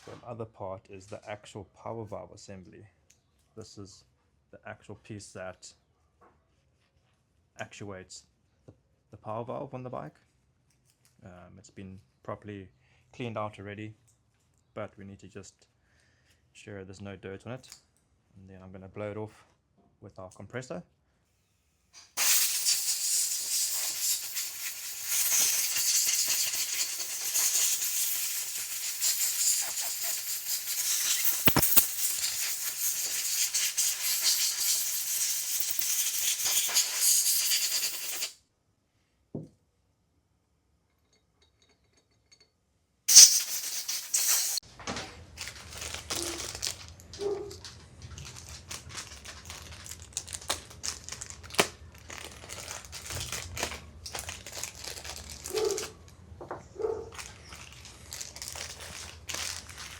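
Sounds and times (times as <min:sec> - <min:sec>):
compressed air hissing: 0:22.1 - 0:38.4, 0:43.1 - 0:44.6
parts clicking when handled: 0:27.4 - 0:36.8.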